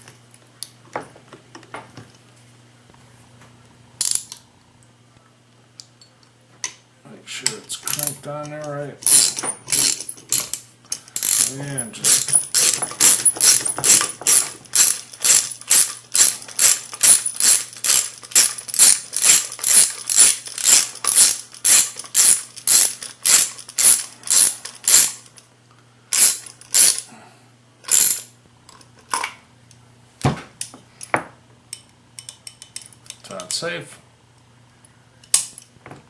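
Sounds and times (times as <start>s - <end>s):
ratchet tool ratcheting: 7.8s - 10.6s, 11.2s - 25.4s, 26.1s - 27.0s.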